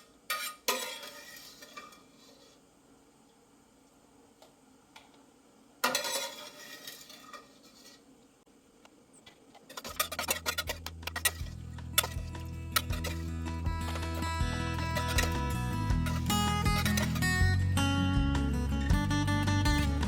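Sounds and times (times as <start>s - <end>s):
metal utensils clattering against pot: 0.3s - 2.1s, 5.8s - 8.0s, 9.7s - 14.2s, 14.8s - 17.4s
background music with plucked notes: 11.5s - 20.0s.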